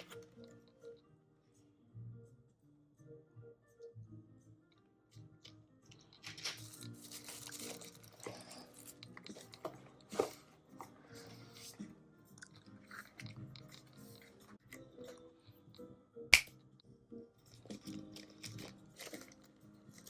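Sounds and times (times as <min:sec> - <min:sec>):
soft background music: 0:00.0 - 0:20.0
packaging crinkling and rustling: 0:06.1 - 0:10.4, 0:17.5 - 0:20.0.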